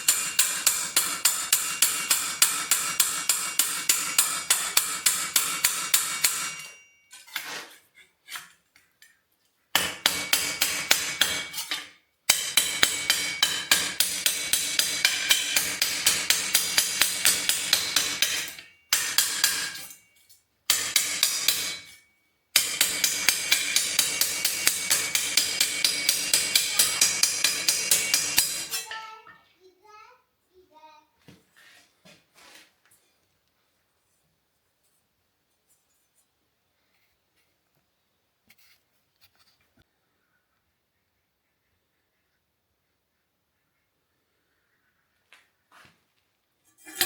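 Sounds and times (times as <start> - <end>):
hammer ringing on metal: 0.0 - 7.2, 9.8 - 29.1.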